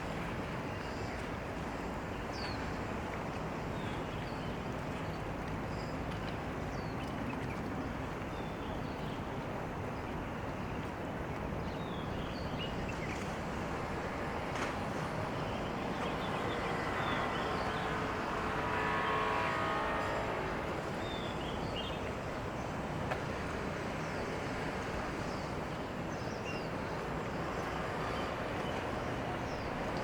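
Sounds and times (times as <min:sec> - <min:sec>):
traffic and harbour ambience: 0:00.0 - 0:30.0
engine passing: 0:14.4 - 0:21.3.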